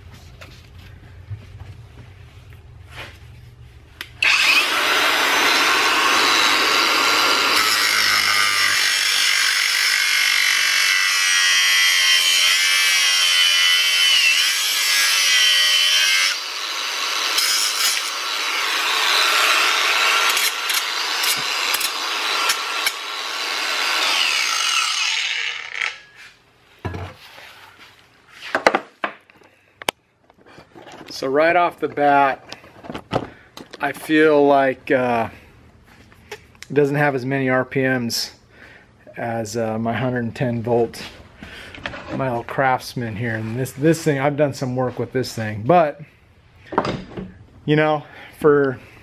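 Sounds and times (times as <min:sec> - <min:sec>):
angle grinder cutting steel: 0:04.2 - 0:26.3.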